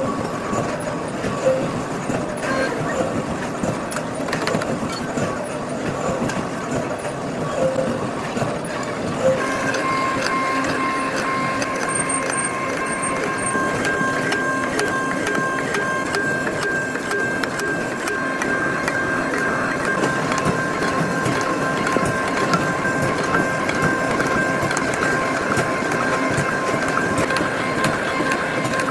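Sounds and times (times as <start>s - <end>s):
factory machinery clattering: 0.0s - 28.9s
high whining tones: 9.2s - 28.9s.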